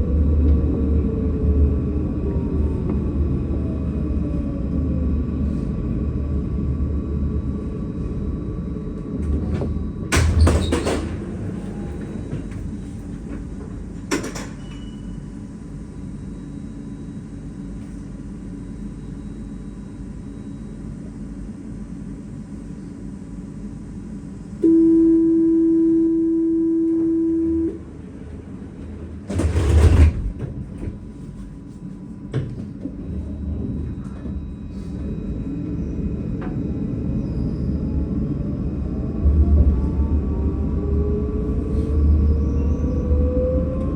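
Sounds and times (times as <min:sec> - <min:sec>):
tram rumbling: 0:00.0 - 0:43.9
sliding doors rushing: 0:09.2 - 0:14.9, 0:27.8 - 0:31.2
warning tone: 0:24.6 - 0:28.0.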